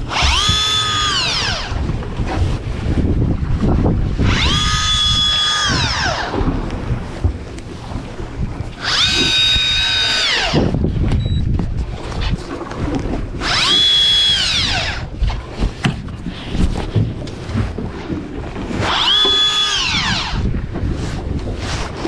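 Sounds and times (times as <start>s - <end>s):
small electric motor whining: 0.0s - 1.8s, 4.2s - 6.3s, 8.8s - 10.7s, 13.4s - 15.1s, 18.9s - 20.4s
low rumble of boat and wind: 0.0s - 22.0s.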